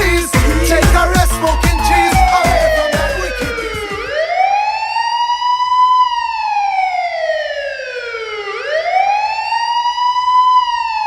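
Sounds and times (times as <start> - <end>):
wailing siren: 0.0 - 11.0.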